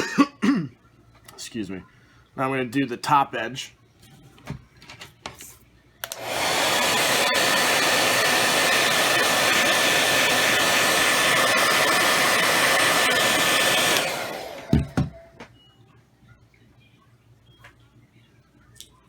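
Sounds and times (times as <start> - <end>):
hair dryer blowing: 6.0 - 15.4.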